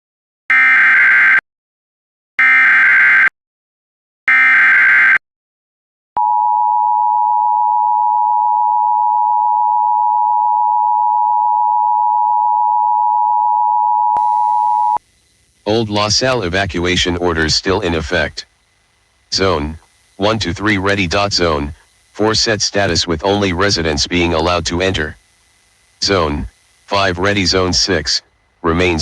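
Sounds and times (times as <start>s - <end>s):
two-tone attention signal: 6.2s - 15.0s
digital header data bursts: 19.3s - 29.0s.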